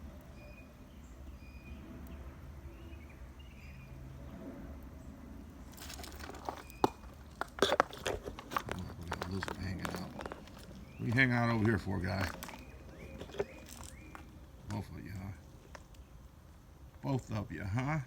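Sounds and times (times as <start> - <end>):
faint bird chirps: 0.0 - 4.0
footsteps crunching on trail: 5.7 - 14.8.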